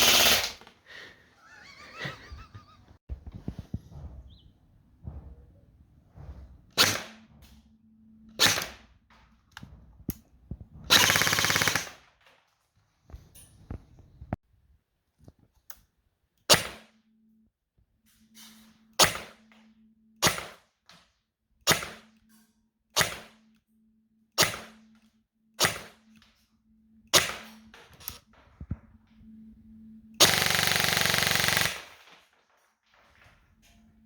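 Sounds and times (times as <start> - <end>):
airsoft gun shots: 21.7 - 22.0, 23.0 - 23.3, 25.6 - 26.0.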